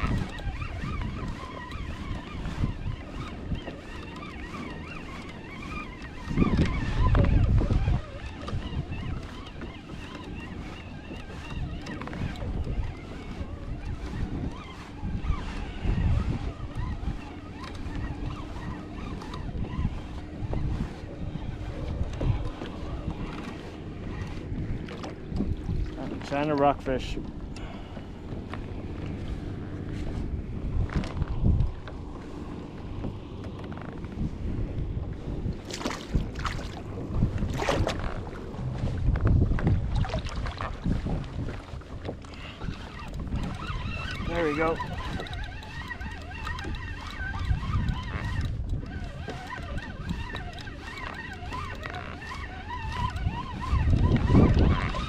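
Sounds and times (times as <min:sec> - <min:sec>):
water lapping against kayak: 0:00.0 - 0:55.0
wind buffeting microphone: 0:00.0 - 0:55.0.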